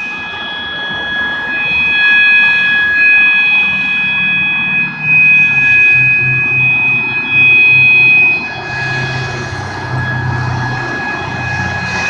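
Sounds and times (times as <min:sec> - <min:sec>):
fire alarm horn steady tone: 0:00.0 - 0:12.0
low rumble: 0:04.8 - 0:12.0.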